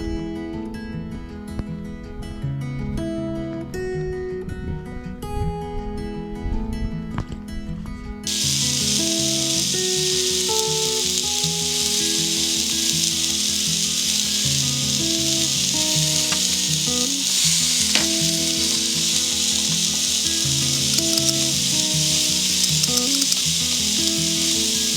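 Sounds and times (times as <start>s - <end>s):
food sizzling in a pan: 8.3s - 24.9s.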